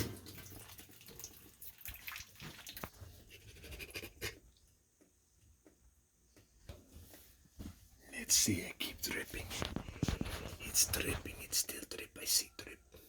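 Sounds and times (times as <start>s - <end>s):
water trickling and dripping: 0.0s - 3.3s.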